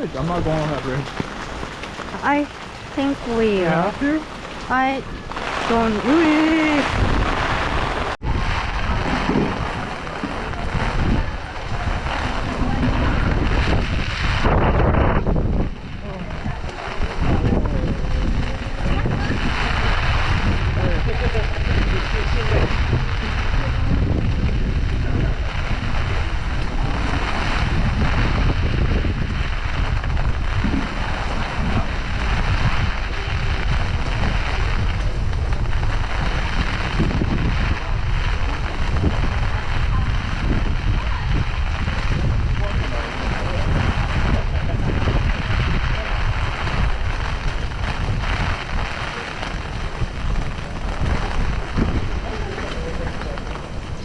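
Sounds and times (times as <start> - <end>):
gusty wind buffeting microphone: 0.0 - 54.0
rain falling: 0.0 - 54.0.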